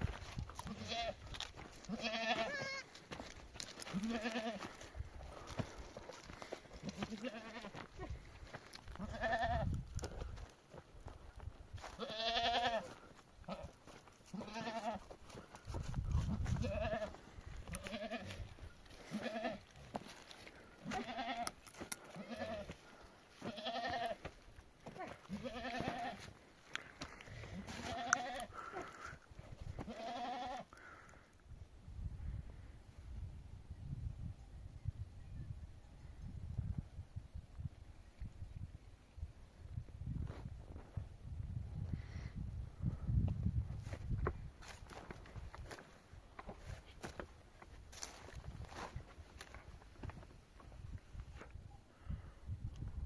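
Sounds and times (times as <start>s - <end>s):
sheep bleating: 0.6s - 1.2s, 1.8s - 3.0s, 3.9s - 4.7s, 6.8s - 8.1s, 9.0s - 9.7s, 11.9s - 15.1s, 16.6s - 18.4s, 19.0s - 19.7s, 20.8s - 22.8s, 23.4s - 26.3s, 27.6s - 28.9s, 29.8s - 30.8s.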